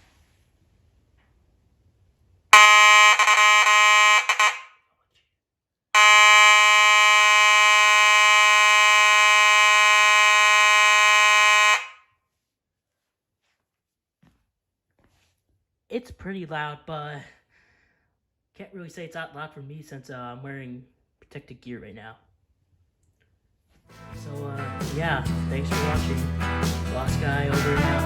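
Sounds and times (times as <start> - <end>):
fire alarm buzzing horn: 2.6 - 4.8, 6.0 - 12.1.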